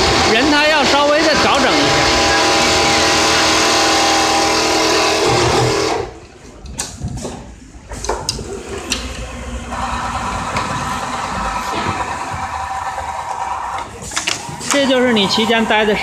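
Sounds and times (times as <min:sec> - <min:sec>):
sewing machine stitching hum: 0:00.0 - 0:06.1.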